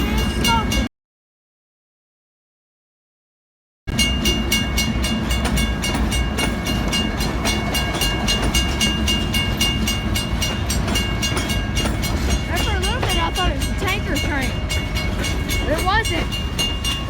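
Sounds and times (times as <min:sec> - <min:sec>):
freight train rumbling past: 0:00.0 - 0:00.9, 0:03.9 - 0:17.0.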